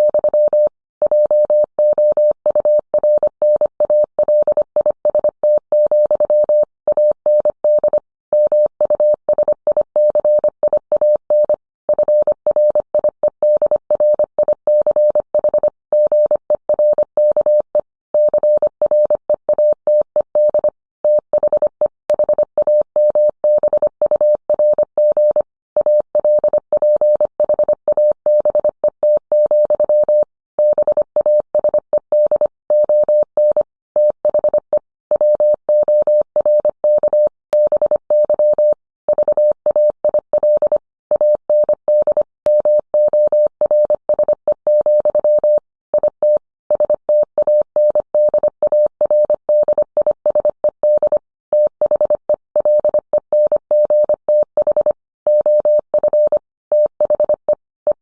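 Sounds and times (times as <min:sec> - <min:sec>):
morse code tone: 0:35.2 - 0:58.0.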